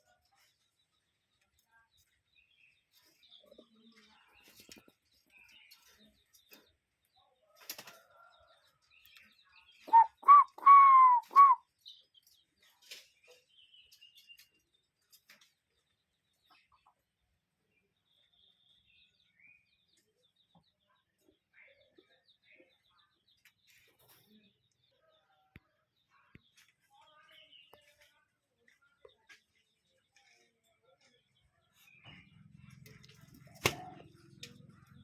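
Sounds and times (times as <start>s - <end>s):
faint bird chirps: 7.2s - 15.4s
cuckoo calling: 9.8s - 11.6s.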